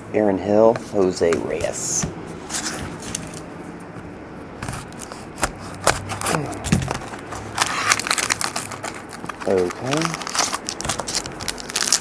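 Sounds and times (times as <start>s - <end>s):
cards and foil wrapper rustling: 1.4s - 3.5s, 4.7s - 12.0s.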